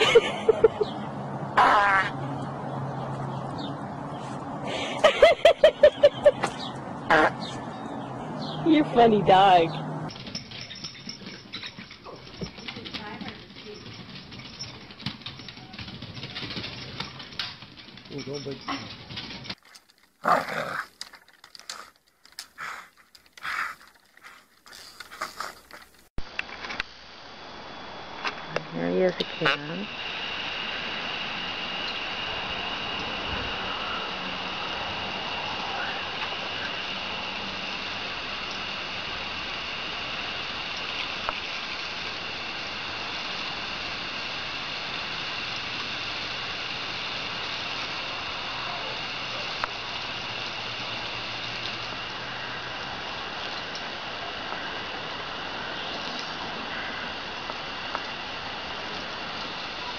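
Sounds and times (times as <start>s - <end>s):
steady hissing noise: 19.2s - 59.9s.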